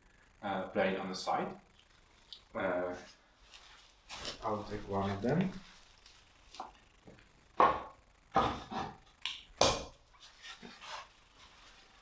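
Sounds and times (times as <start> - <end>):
wooden knocks and clunks: 7.6 - 8.8.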